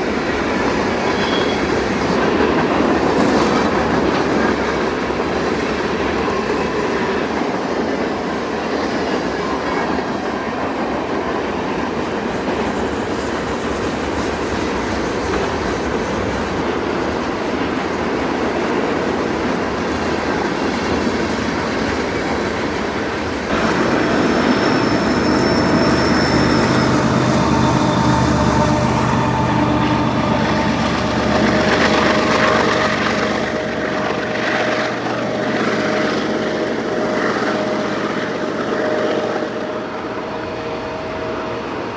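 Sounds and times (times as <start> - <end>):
train wheels clacking on rails: 0.0 - 41.9
locomotive engine drone: 9.4 - 41.9.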